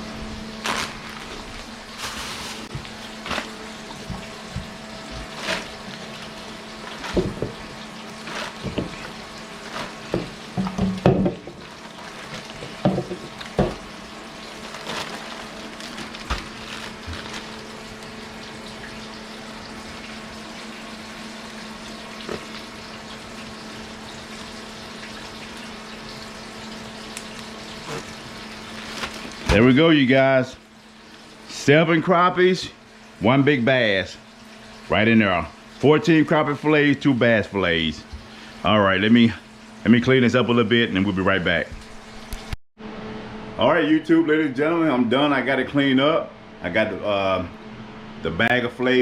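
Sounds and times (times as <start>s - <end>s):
tap running into a sink: 8.6s - 9.2s, 10.1s - 11.6s, 12.6s - 13.9s
knocks and clatter of handling: 12.3s - 13.8s.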